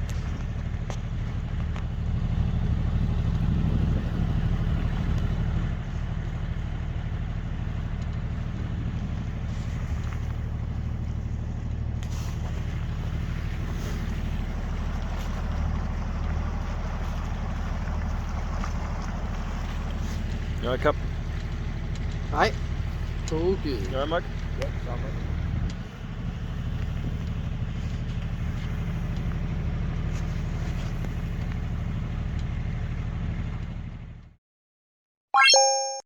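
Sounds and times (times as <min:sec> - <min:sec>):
boat engine running: 0:00.0 - 0:34.2
wind: 0:00.0 - 0:34.3
water noise: 0:10.4 - 0:23.3.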